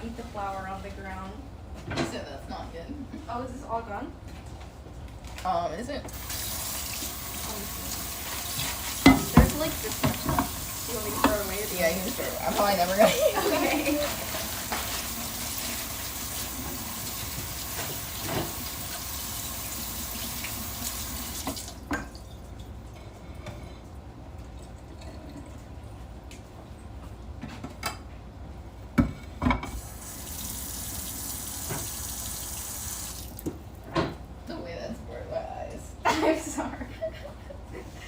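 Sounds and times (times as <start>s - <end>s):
tap running into a sink: 6.3s - 11.6s, 14.0s - 22.2s, 31.5s - 34.1s.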